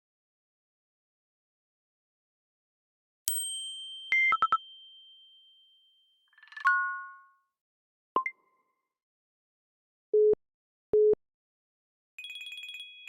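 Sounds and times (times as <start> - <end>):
bright chime: 3.3 - 6.0.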